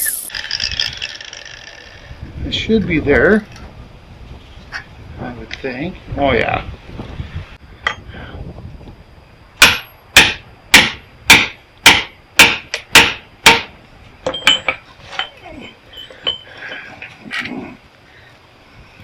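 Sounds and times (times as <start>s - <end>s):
hammer striking metal: 9.6s - 13.7s
light metal knocks and clinks: 14.2s - 17.0s.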